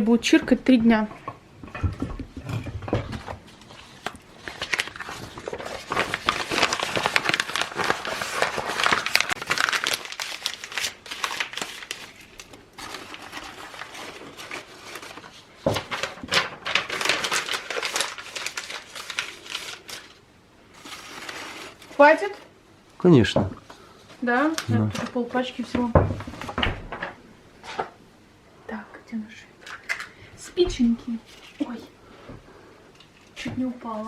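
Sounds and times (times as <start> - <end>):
paper crumpling: 3.2 - 22.4.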